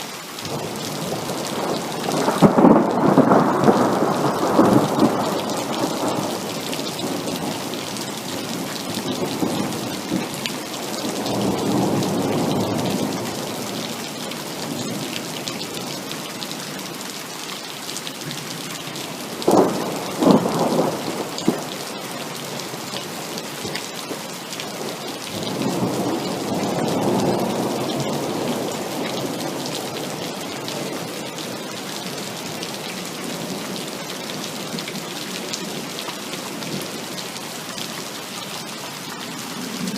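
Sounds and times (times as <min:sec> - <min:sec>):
heavy rain falling: 0:00.0 - 0:39.9
thunder rumbling: 0:00.5 - 0:16.2, 0:19.2 - 0:33.8.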